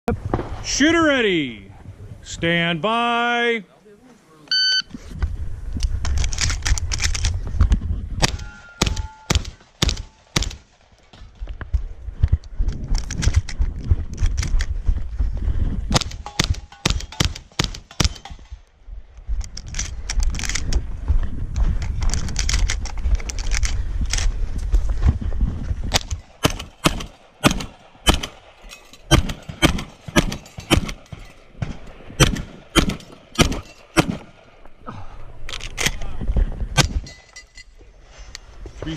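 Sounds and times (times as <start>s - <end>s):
shotgun shots: 8.2s - 10.8s, 15.9s - 18.5s, 25.9s - 34.4s, 36.8s - 37.1s
steel targets ringing: 8.3s - 9.4s.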